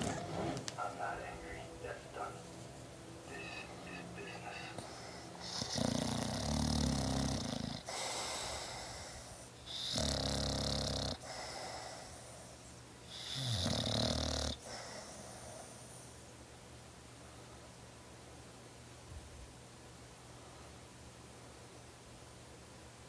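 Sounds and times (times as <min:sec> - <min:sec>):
dog breathing: 0:03.3 - 0:13.8, 0:14.5 - 0:16.2
dog snoring: 0:03.3 - 0:16.2.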